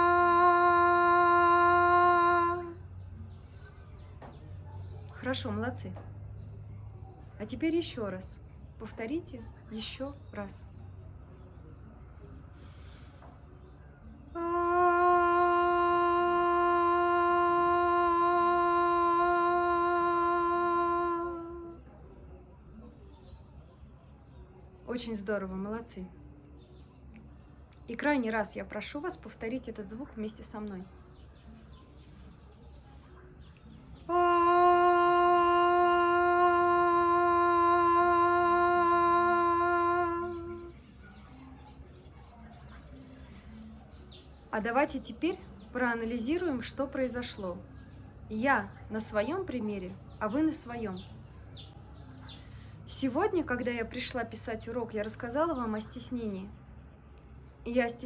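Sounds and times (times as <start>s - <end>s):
woman singing a held note: 0.0s - 2.8s, 14.4s - 21.9s, 34.1s - 40.8s.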